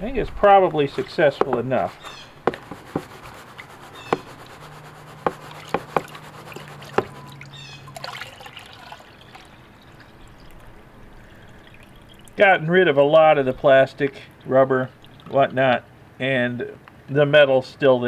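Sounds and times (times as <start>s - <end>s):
water sloshing in a pan: 0.0s - 15.6s.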